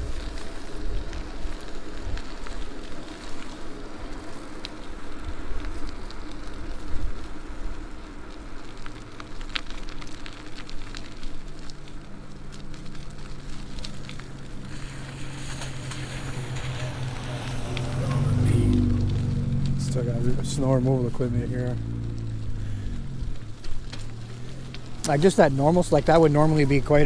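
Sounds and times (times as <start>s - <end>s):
bike tyres crackling on road: 0.0s - 27.0s
low engine hum: 8.6s - 27.0s.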